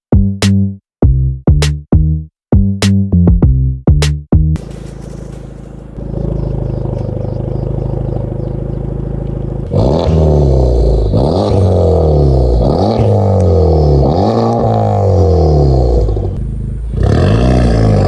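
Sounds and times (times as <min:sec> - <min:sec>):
car engine idling and revving: 0:04.6 - 0:18.0.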